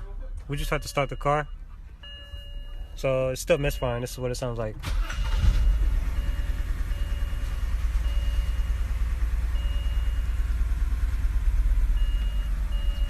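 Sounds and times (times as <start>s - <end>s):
car engine idling unevenly: 0.0s - 13.0s.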